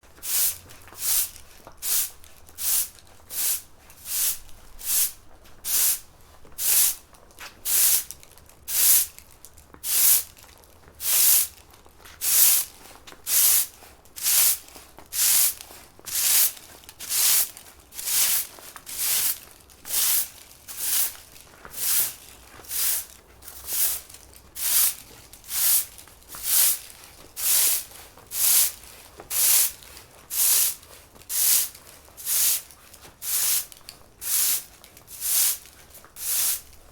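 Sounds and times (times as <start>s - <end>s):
broom sweeping pavement: 0.1s - 36.9s.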